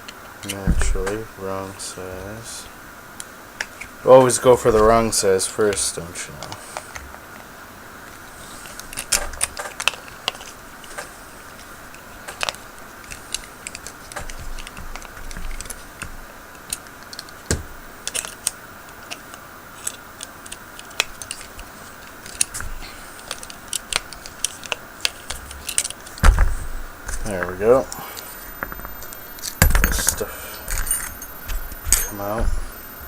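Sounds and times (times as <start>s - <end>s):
metal tools clicking on padlock: 28.6s - 33.0s.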